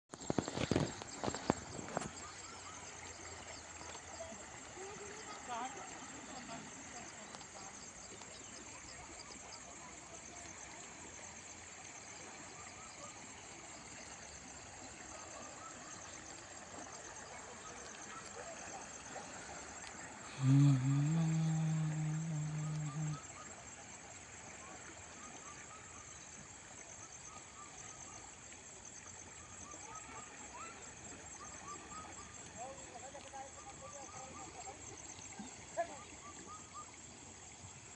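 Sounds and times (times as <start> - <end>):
insects chirping: 0.1 - 37.9
rush of flooded river: 0.2 - 37.9
low hiss: 19.9 - 23.9
high-pitched insect buzz: 20.3 - 23.3.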